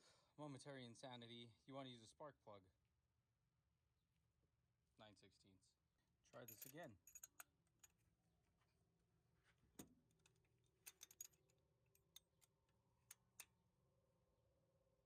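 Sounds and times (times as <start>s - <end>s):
metallic clicks of hand tools: 6.6s - 7.9s.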